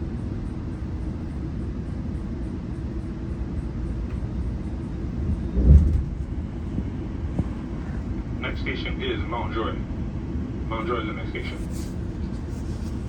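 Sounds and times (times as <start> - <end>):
train rumbling on track: 0.0 - 13.0
loud thump: 5.6 - 6.3.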